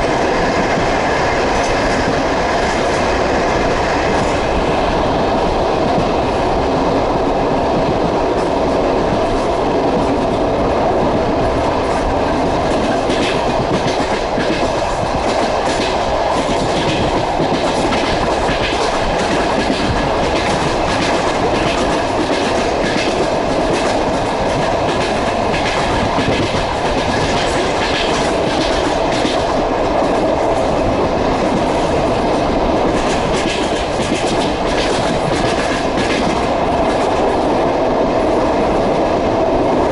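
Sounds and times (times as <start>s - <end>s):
train wheels clattering: 11.2s - 37.6s.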